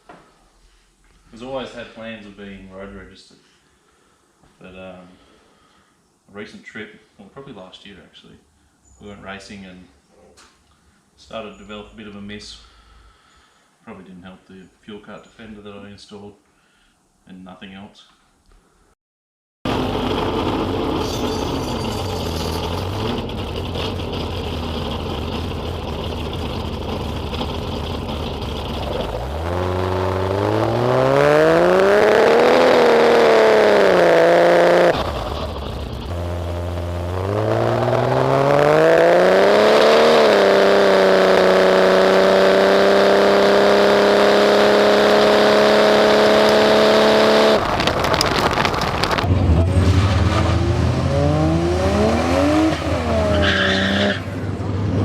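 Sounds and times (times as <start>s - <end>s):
car engine revving: 19.7s - 55.0s.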